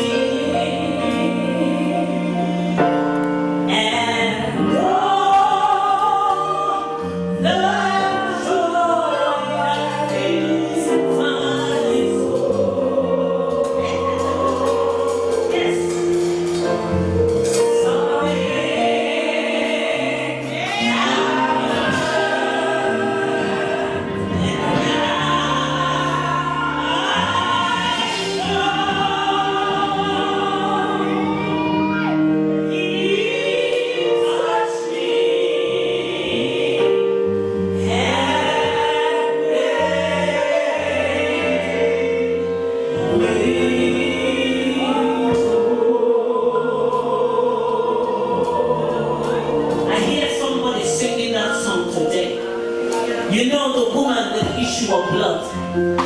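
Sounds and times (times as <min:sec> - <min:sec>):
gospel singing: 0:00.0 - 0:56.0
instrumental chords and bass: 0:34.9 - 0:53.4.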